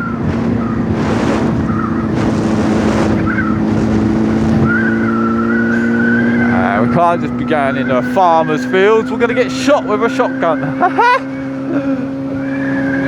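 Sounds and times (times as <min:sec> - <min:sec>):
wind rushing over microphone: 0:00.0 - 0:07.5
motorcycle engine running: 0:00.0 - 0:13.0.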